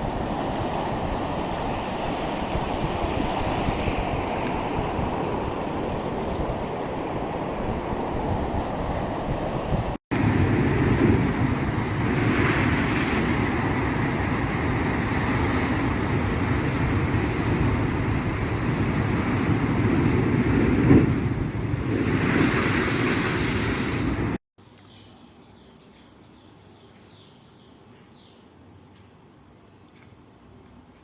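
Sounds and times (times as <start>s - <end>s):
sea waves rushing: 0.0s - 24.4s.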